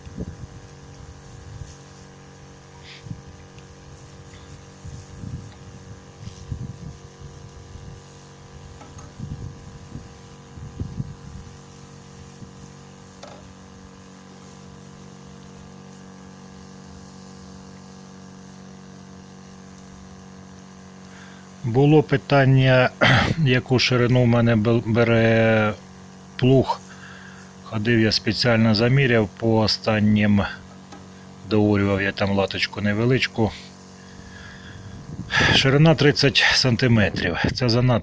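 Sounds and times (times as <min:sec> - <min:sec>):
small motor humming: 0:00.0 - 0:38.0
low buffeting: 0:23.0 - 0:37.8.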